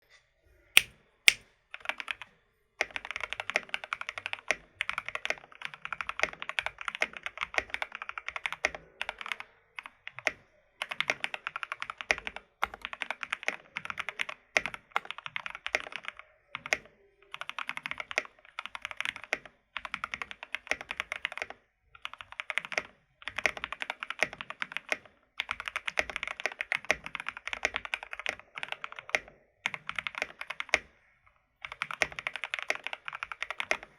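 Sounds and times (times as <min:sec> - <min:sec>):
mechanical keyboard typing: 0:00.8 - 0:01.4, 0:03.0 - 0:09.4, 0:10.8 - 0:30.9, 0:31.6 - 0:33.9
sharp keyboard clacks: 0:00.8 - 0:01.4.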